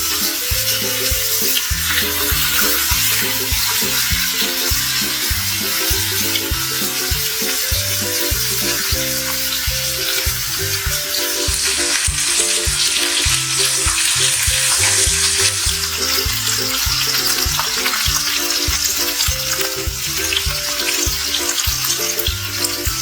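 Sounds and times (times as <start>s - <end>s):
background music with bass line: 0.0s - 23.0s
food sizzling in a pot: 0.0s - 23.0s.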